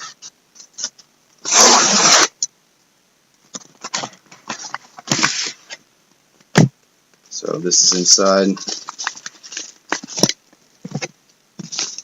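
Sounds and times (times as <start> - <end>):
packaging rustling and crinkling: 3.5 - 5.8, 8.3 - 12.0.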